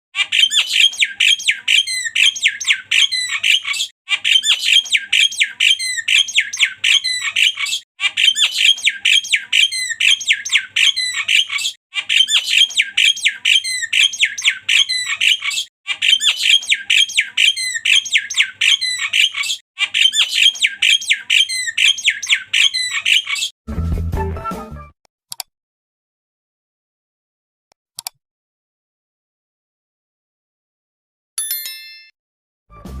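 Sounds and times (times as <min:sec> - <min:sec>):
bird calling harsh sharp notes: 0:00.2 - 0:23.5.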